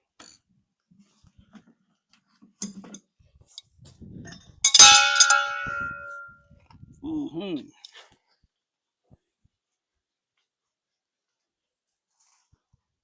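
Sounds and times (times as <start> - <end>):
ringing clang of struck steel: 4.7 - 6.4.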